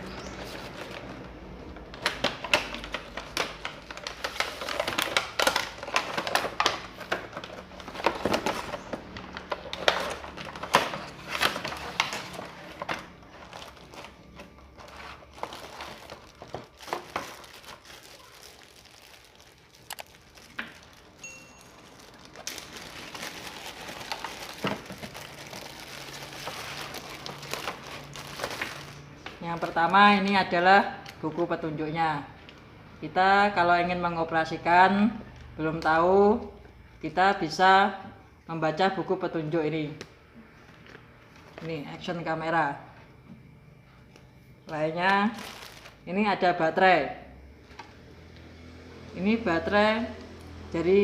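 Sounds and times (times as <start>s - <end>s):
plastic wrapping crinkling: 0.0s - 30.0s, 45.2s - 46.1s.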